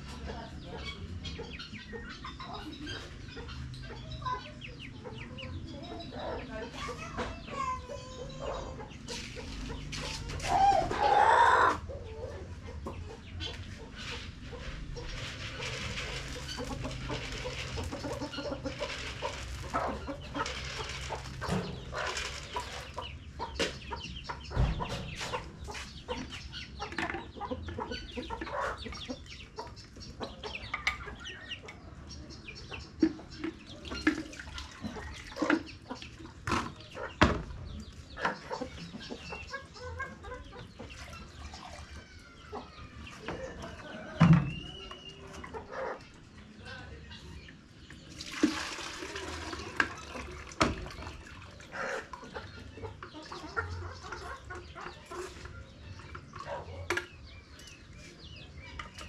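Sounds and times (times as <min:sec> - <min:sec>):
chickens clucking: 0:00.0 - 0:59.0
loud chicken call: 0:10.4 - 0:11.8.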